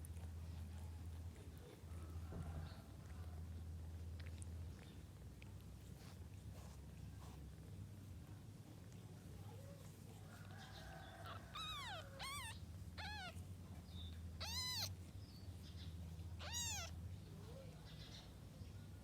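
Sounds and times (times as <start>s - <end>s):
cat meowing: 11.2s - 13.4s, 14.4s - 15.0s, 16.4s - 17.0s.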